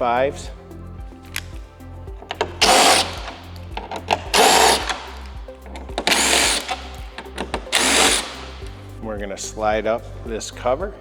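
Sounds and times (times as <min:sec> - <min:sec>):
background music: 0:00.0 - 0:11.0
power driver whirring: 0:02.1 - 0:08.8.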